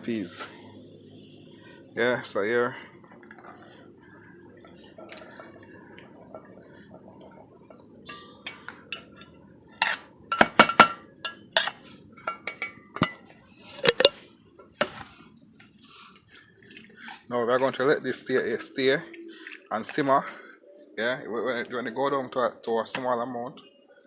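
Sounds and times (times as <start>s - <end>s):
metal utensil clinking on pot: 8.0s - 14.2s.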